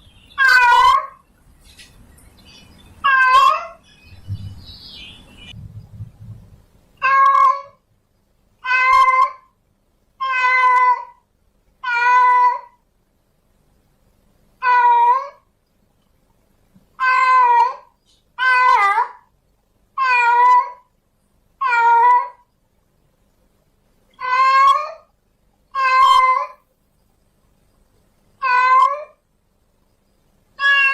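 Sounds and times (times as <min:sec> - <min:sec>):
cat meowing loudly: 0:00.4 - 0:01.2, 0:03.0 - 0:03.8, 0:07.0 - 0:07.8, 0:08.6 - 0:09.5, 0:10.2 - 0:11.2, 0:11.8 - 0:12.8, 0:14.6 - 0:15.4, 0:17.0 - 0:19.3, 0:20.0 - 0:20.9, 0:21.6 - 0:22.4, 0:24.2 - 0:25.1, 0:25.7 - 0:26.6, 0:28.4 - 0:29.2, 0:30.6 - 0:30.9
faint low rumbling: 0:03.8 - 0:07.0.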